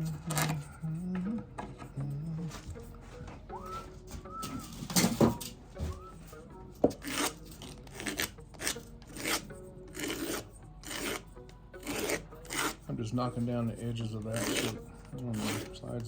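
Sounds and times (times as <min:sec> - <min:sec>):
scraping wooden dowel: 0:06.8 - 0:16.0.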